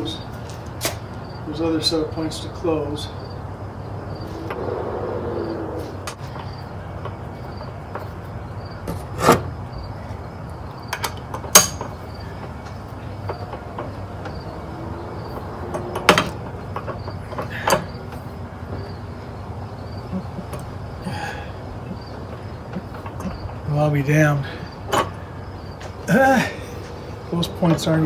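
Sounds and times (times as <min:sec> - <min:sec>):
steady low hum: 0:02.4 - 0:07.5.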